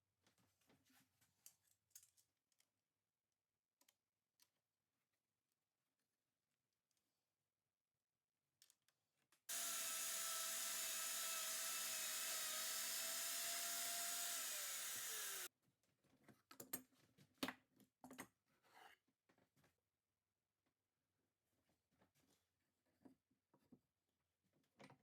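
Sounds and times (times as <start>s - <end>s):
hand router whining: 9.5s - 15.5s.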